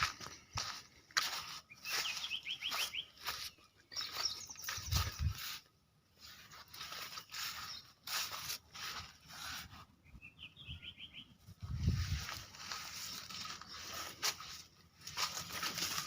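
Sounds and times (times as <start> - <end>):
bird chirping: 1.3 - 5.6, 6.2 - 14.6.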